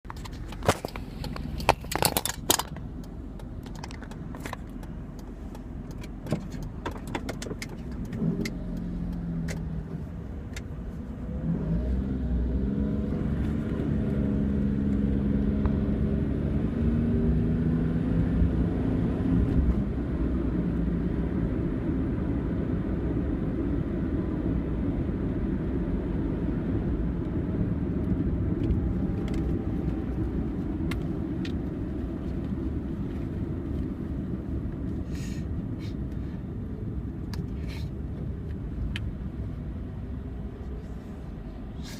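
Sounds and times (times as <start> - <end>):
road and tyre noise: 0.0 - 41.9
sharp clicks and knocks: 0.1 - 10.7
car engine accelerating: 0.1 - 41.9.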